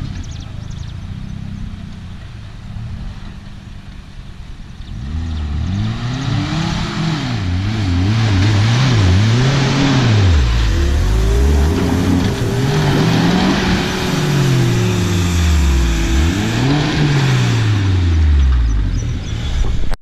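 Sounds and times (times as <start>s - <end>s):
engine revving: 4.8s - 20.0s
rushing hiss: 10.4s - 17.8s.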